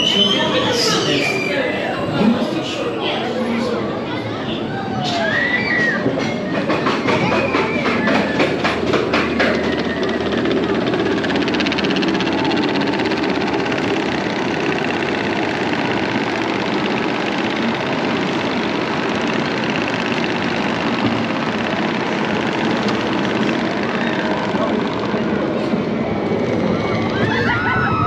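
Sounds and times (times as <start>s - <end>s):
roller coaster rumbling and rattling: 0.0s - 28.0s.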